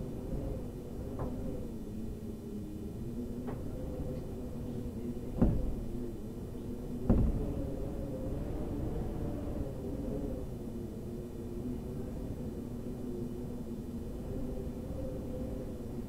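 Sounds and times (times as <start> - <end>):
wind moaning and whistling: 0.0 - 16.0
faint knock: 5.4 - 5.9, 7.1 - 7.5.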